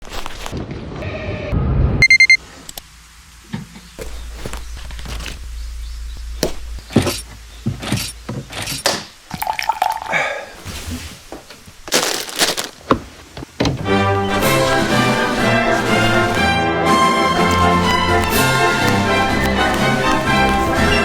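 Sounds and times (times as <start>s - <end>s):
electronic beeps: 2.0s - 2.4s
low steady hum: 2.0s - 8.5s.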